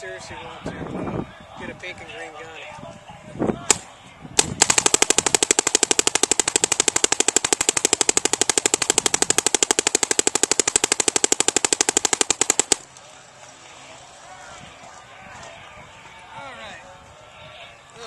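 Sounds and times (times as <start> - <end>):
paintball marker firing: 3.7 - 12.9.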